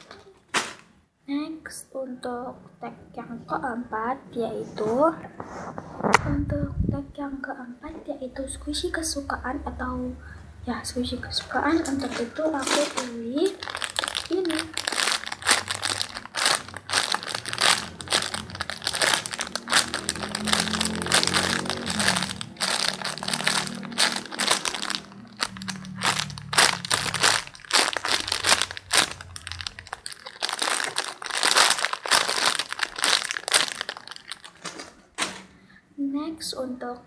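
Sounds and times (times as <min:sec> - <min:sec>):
plastic packaging crinkling: 0:11.0 - 0:35.3.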